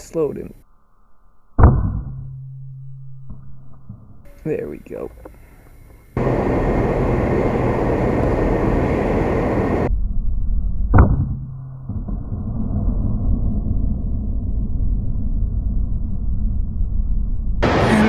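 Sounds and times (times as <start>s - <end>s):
strong wind buffeting microphone: 6.2s - 9.9s.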